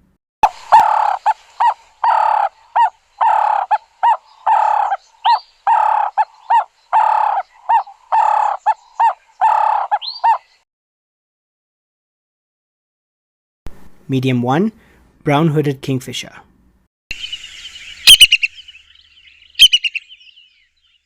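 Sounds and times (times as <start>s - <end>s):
dove cooing: 0.4s - 10.4s.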